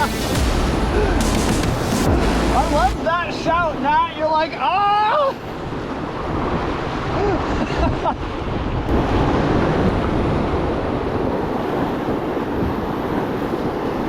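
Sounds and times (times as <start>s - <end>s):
whitewater rapids rushing: 0.0s - 7.6s
wind buffeting microphone: 0.0s - 14.0s.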